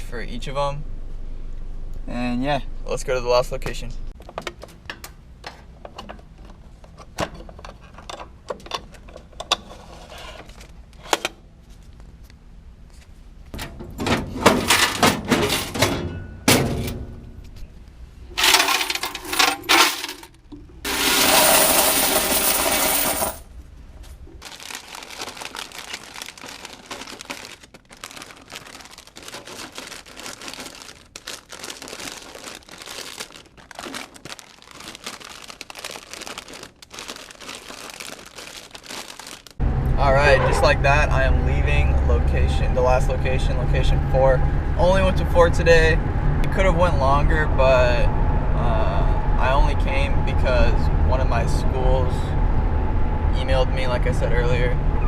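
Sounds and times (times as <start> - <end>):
handling clicks and knocks: 4.2 - 9.6
coins clinking and rattling: 18.4 - 23.4.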